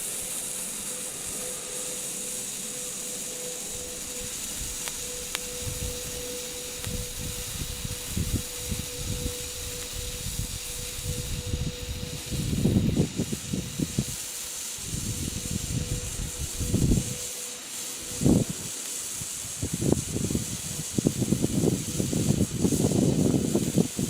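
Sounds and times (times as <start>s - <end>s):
fountain firework hissing: 0.0s - 24.0s
low rumbling gusts: 3.6s - 14.2s, 14.8s - 17.3s, 18.1s - 24.0s.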